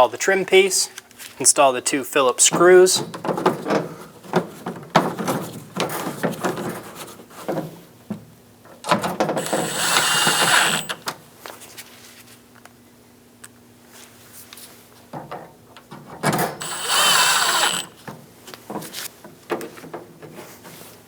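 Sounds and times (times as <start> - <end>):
cordless drill driving a screw: 8.9 - 11.1, 16.6 - 18.0.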